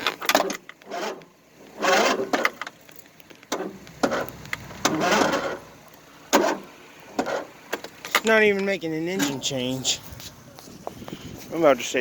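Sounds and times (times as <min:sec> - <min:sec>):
clicks and rustling handling: 0:07.2 - 0:11.6.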